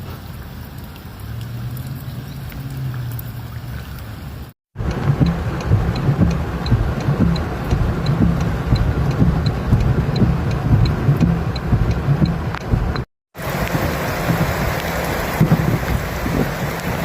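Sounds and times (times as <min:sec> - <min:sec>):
vehicle rumble from inside: 0:00.0 - 0:17.0
turn signal clicking: 0:04.8 - 0:15.7.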